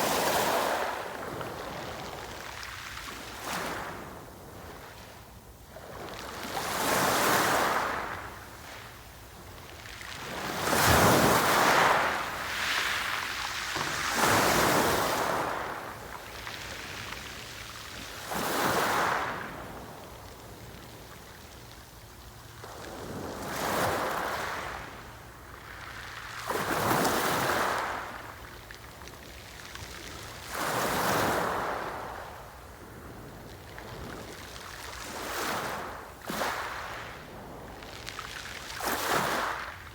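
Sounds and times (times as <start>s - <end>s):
sea waves breaking on shore: 9.9s - 28.8s, 29.6s - 39.9s.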